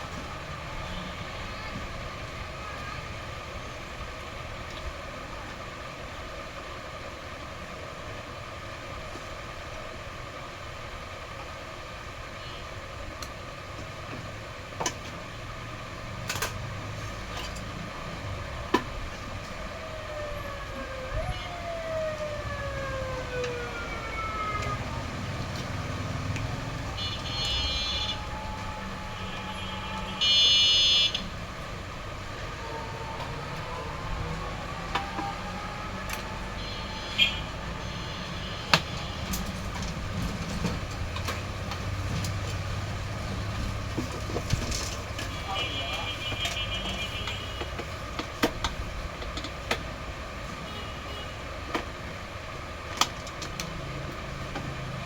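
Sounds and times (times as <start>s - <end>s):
traffic rumble: 0.0s - 55.0s
siren winding down: 19.2s - 31.5s, 32.1s - 39.4s
high horn blasts: 26.5s - 31.4s, 36.4s - 39.6s, 45.2s - 47.8s, 50.6s - 51.4s.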